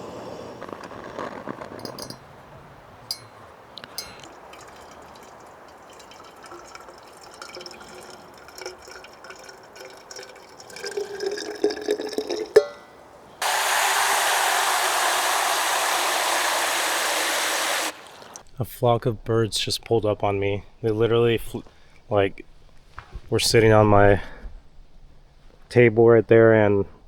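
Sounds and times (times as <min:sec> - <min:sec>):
faint clinks: 0:01.8 - 0:02.3, 0:03.0 - 0:13.0
tea pouring into a flask: 0:04.1 - 0:12.6, 0:13.4 - 0:18.4.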